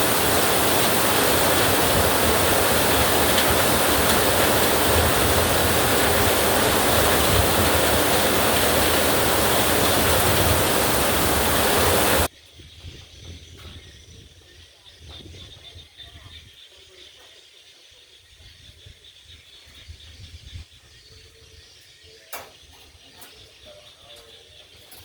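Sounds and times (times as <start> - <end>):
heavy rain: 0.0 - 12.3.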